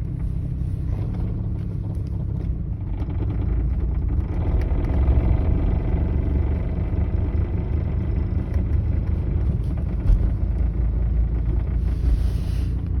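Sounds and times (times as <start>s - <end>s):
engine knock: 0.0s - 13.0s
engine rumbling: 0.0s - 13.0s
hiss: 11.9s - 12.8s.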